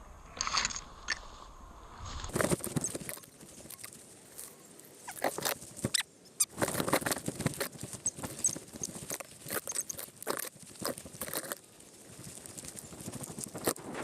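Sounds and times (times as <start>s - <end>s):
footsteps crunching through dry leaves: 10.3s - 14.0s.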